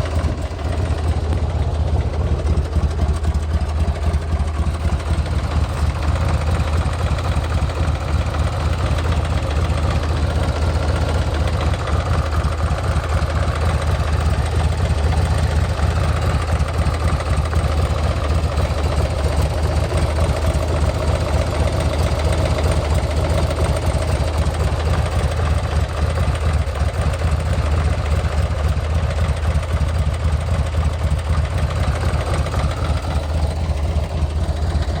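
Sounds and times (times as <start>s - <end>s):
motorcycle engine idling: 0.0s - 35.0s.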